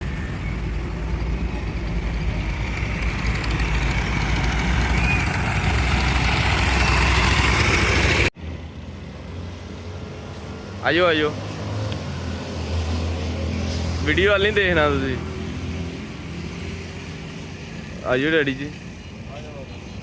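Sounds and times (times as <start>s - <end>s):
heavy truck engine running: 0.0s - 10.5s.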